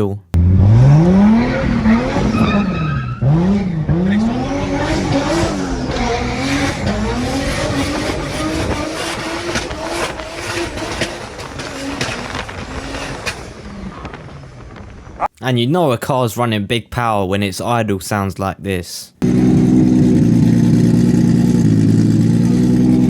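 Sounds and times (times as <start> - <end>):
car engine accelerating hard: 0.4 - 14.7, 19.2 - 23.0
exhaust pops: 0.4 - 15.3.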